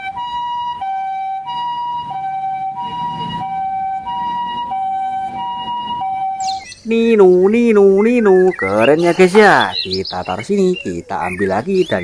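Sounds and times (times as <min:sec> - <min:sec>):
two-tone ambulance siren: 0:00.0 - 0:06.8.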